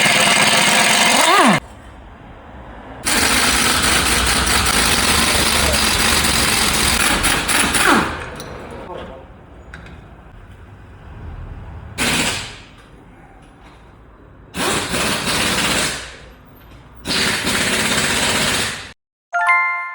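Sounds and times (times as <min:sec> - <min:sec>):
pneumatic impact wrench rattling: 0:00.0 - 0:01.6, 0:03.0 - 0:08.4, 0:12.0 - 0:12.8, 0:14.5 - 0:16.3, 0:17.0 - 0:18.9.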